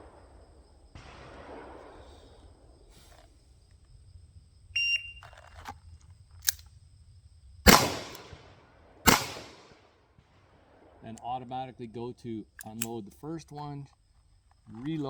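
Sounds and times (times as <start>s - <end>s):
revolver gunshot: 1.0s - 2.4s, 7.7s - 11.0s
sharp click: 6.4s - 6.7s.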